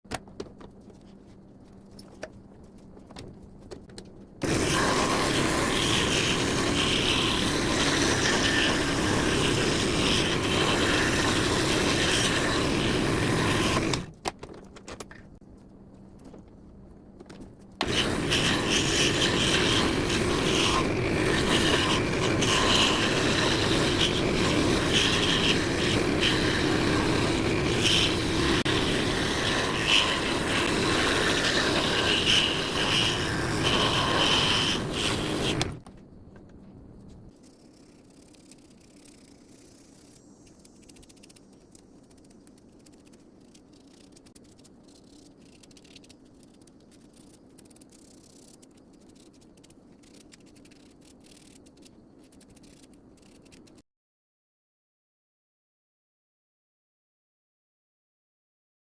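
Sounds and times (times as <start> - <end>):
scroll saw cutting wood: 4.4 - 14.1, 17.8 - 35.8.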